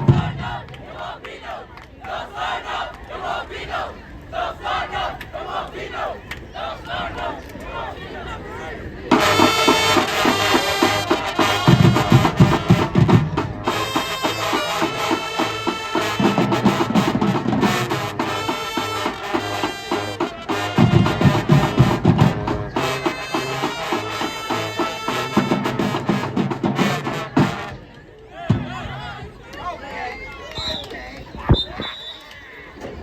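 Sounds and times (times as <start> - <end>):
marching band playing: 0.0 - 6.1, 9.1 - 29.3
bass drums: 9.1 - 27.7.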